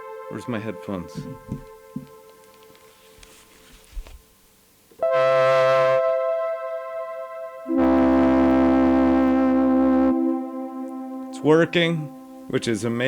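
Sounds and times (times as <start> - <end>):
brassy synthesizer notes: 0.0 - 2.4, 5.0 - 13.0.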